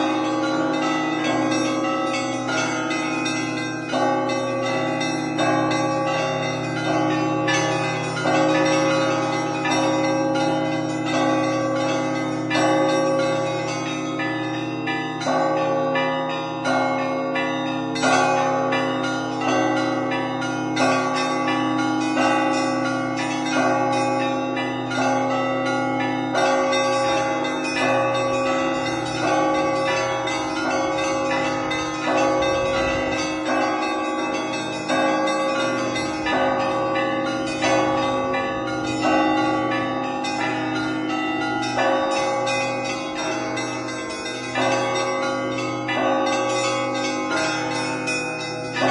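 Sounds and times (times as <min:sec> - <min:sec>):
deep church bells humming: 0:00.0 - 0:48.9
smaller bells ringing patterns: 0:00.0 - 0:48.9
heavy bell strokes: 0:15.2 - 0:48.9.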